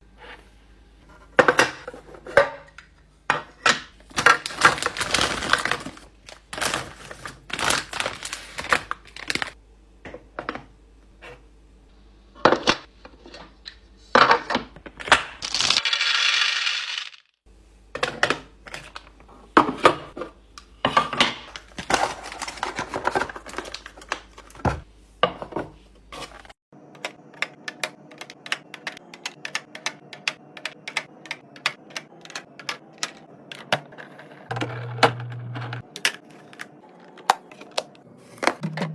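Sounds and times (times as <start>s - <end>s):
packaged goods clattering: 3.9s - 9.6s, 21.0s - 24.8s
packaging rustling: 4.0s - 9.6s, 21.5s - 24.8s.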